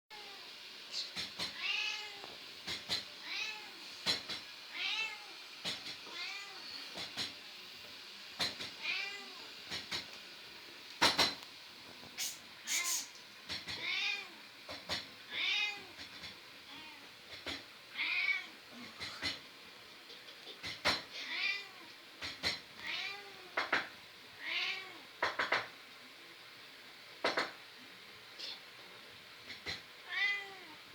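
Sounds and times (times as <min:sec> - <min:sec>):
cat meowing: 0:01.4 - 0:02.3, 0:03.2 - 0:03.8, 0:06.0 - 0:06.8, 0:08.8 - 0:09.5, 0:12.6 - 0:14.4, 0:15.3 - 0:16.1, 0:18.0 - 0:18.6, 0:22.8 - 0:25.1, 0:29.7 - 0:30.8.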